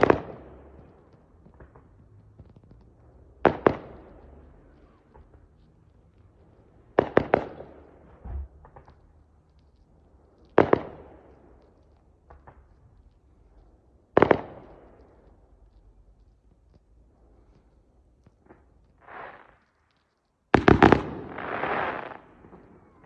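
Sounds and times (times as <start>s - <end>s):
fireworks bangs: 0.0s - 6.2s, 6.9s - 9.1s, 10.4s - 13.2s, 14.1s - 15.3s, 18.2s - 23.0s.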